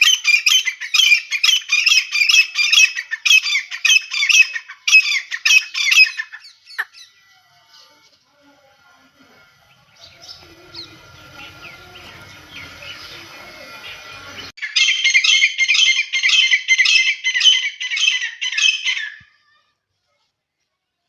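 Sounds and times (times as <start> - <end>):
songbird chirps: 0.0 - 21.0
francolin calling: 9.6 - 19.2.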